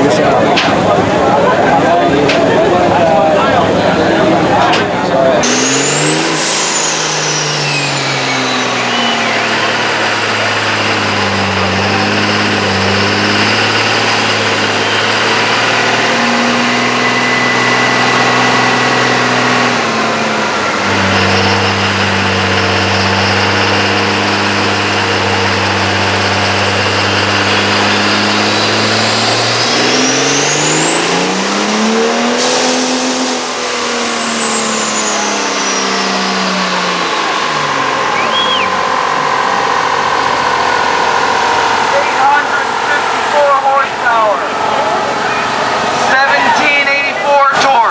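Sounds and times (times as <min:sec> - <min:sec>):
car engine revving: 0:00.0 - 0:47.9
high whistle from engine: 0:05.4 - 0:19.8, 0:20.9 - 0:42.8.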